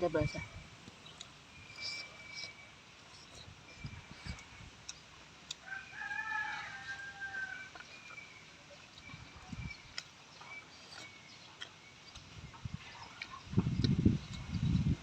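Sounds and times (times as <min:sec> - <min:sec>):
rooster crowing: 0:05.6 - 0:07.8.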